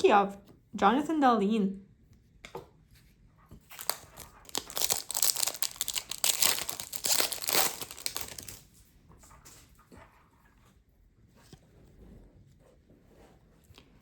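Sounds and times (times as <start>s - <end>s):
foil wrapper crinkling and tearing: 3.7s - 8.7s.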